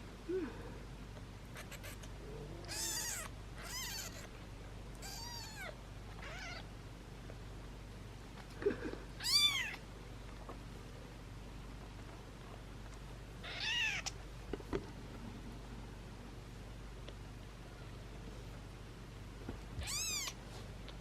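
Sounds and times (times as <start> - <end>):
kittens mewing: 1.5 - 4.3, 5.0 - 6.6, 9.2 - 9.8, 13.4 - 14.1, 19.8 - 20.4.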